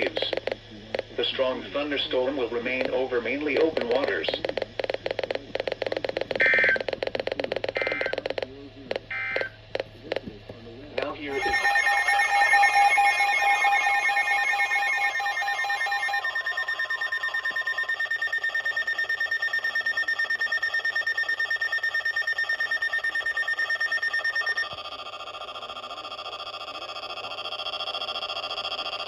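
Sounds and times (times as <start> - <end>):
electronic alarm tones: 4.9 - 8.2, 11.3 - 26.1.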